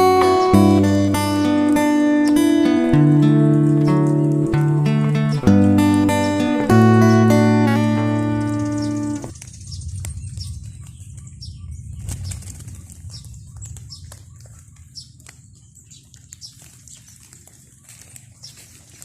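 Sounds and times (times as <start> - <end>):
low rumble: 8.4 - 14.6
bird wings flapping: 11.9 - 19.0.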